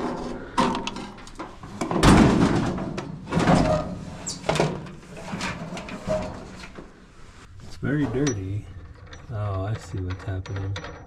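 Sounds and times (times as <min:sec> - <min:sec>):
dryer parts clunking and rattling: 0:00.0 - 0:07.0.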